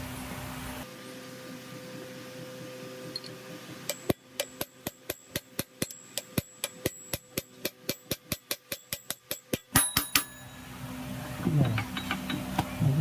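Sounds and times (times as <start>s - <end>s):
hammer striking metal: 3.2s - 10.6s.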